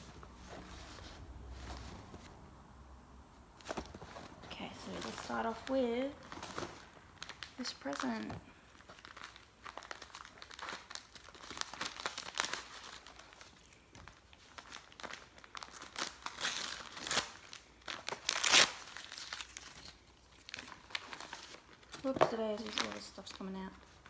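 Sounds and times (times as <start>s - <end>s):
wrapping paper crinkling and tearing: 4.6s - 24.0s.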